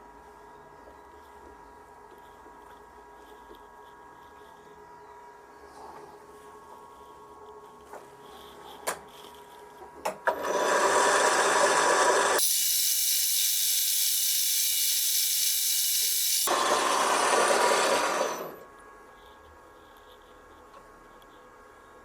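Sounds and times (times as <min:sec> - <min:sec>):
workshop tool rasping hiss: 0:10.4 - 0:18.6.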